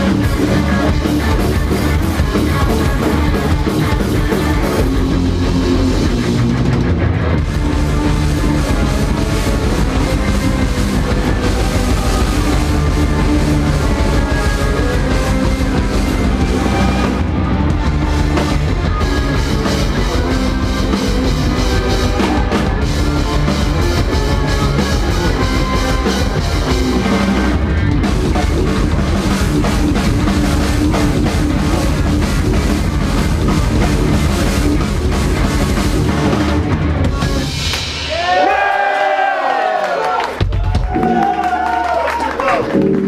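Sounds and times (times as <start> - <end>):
rock band playing live: 0.0 - 39.2, 40.3 - 43.0.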